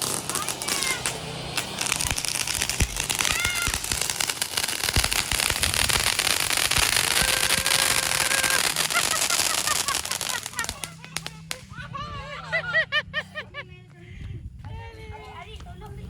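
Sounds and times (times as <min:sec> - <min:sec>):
firecrackers crackling: 0:00.0 - 0:12.4.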